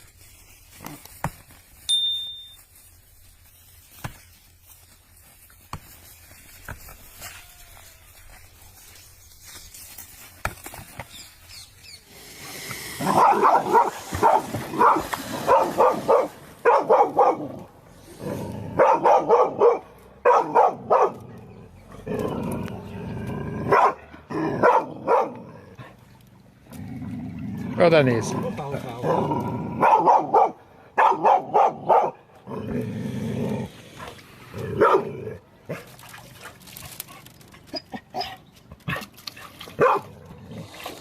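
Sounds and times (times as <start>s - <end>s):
animal barking: 13.0s - 17.7s, 18.7s - 21.4s, 23.6s - 25.6s, 29.0s - 32.2s, 34.6s - 35.8s, 39.8s - 40.3s.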